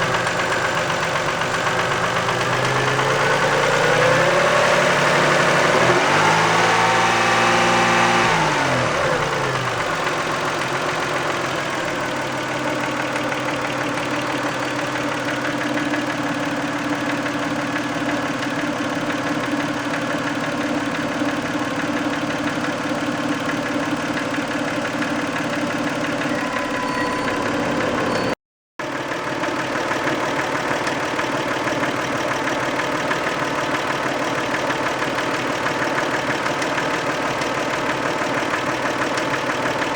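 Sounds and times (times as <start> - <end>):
car engine revving down to idle: 0.0 - 11.6.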